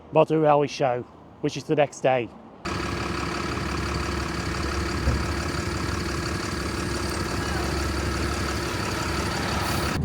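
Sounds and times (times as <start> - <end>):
vehicle running hum: 2.7 - 10.0.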